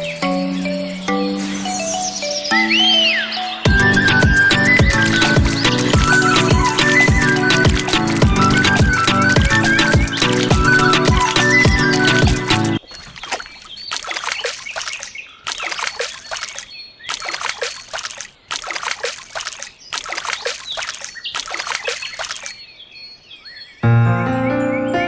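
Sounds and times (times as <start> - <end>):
water splashing in gushes: 4.8 - 22.6.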